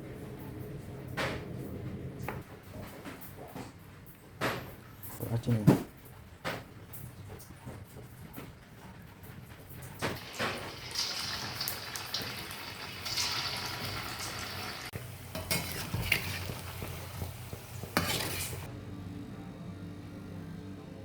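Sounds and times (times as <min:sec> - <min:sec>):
food sizzling in hot oil: 0:10.2 - 0:18.7
utensil scraping a pan: 0:15.3 - 0:18.7.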